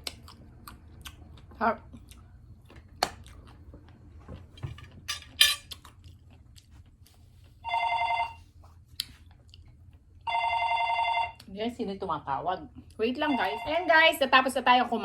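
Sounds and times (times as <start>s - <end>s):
electronic telephone ring: 7.6s - 8.4s, 10.3s - 11.4s, 13.3s - 13.9s.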